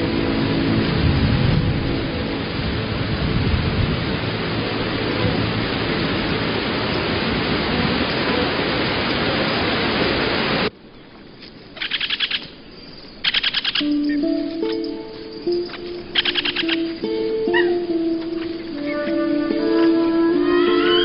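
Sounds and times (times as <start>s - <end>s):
heavy rain hissing: 0.0s - 21.0s
fast high chirping trills: 11.3s - 20.0s
plucked notes: 13.5s - 21.0s.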